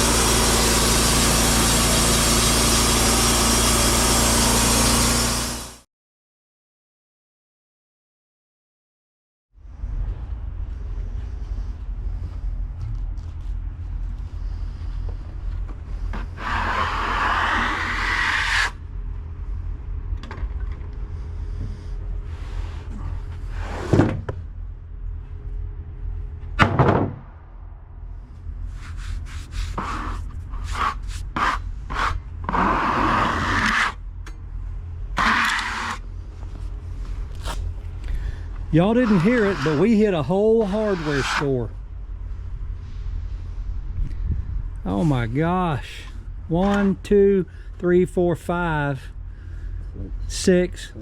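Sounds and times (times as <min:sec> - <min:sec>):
band sawmill running: 0:00.0 - 0:05.8, 0:14.4 - 0:18.8, 0:29.0 - 0:34.4, 0:35.0 - 0:41.8
saw rasping: 0:00.0 - 0:05.8, 0:16.1 - 0:18.8, 0:28.8 - 0:34.0, 0:35.2 - 0:36.0, 0:38.8 - 0:41.7.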